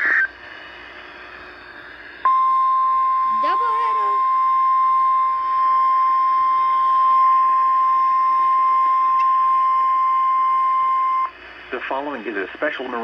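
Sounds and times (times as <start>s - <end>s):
high-pitched alarm tone: 2.3s - 11.3s.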